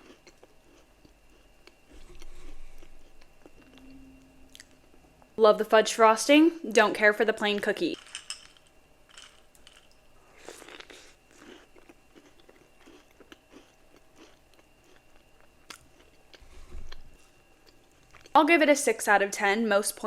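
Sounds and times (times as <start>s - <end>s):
person chewing cookie: 0.0s - 3.8s, 10.3s - 18.3s.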